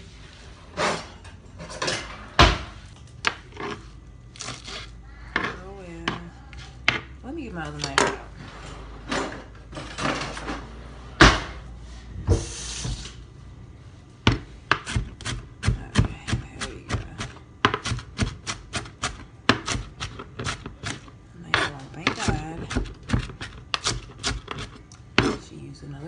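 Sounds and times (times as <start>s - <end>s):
knife chopping on cutting board: 14.3s - 21.0s.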